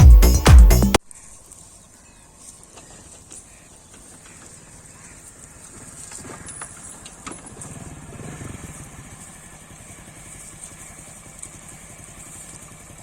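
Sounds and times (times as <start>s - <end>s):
engine running: 6.1s - 13.0s.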